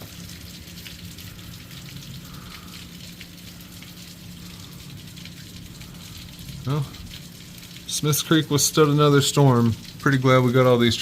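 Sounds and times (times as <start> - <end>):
low steady hum: 0.0 - 11.0
steady rain: 0.0 - 11.0.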